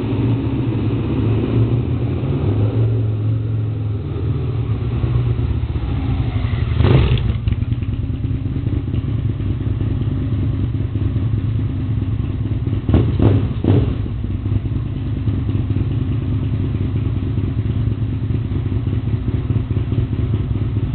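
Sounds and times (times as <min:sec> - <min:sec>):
motorcycle engine idling: 0:03.3 - 0:20.9.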